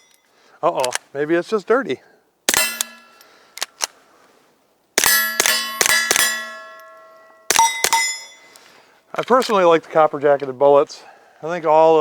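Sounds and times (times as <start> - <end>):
steel plate ringing: 2.5 - 3.2, 5.0 - 8.5
muffled pistol shots: 5.0 - 6.6.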